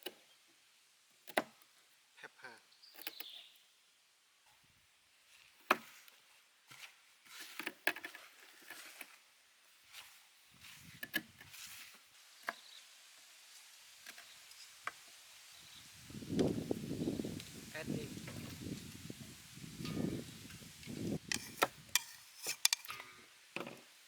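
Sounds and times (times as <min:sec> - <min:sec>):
kitchen utensils clicking and tapping: 0:21.2 - 0:23.2.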